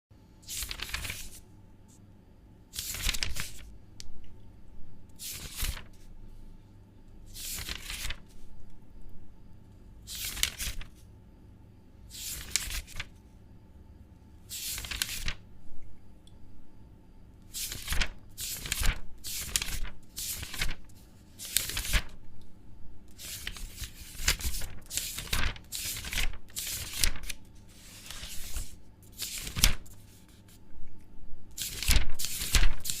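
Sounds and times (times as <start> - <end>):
paper tearing: 7.4 - 8.2, 23.2 - 29.9, 31.6 - 33.0.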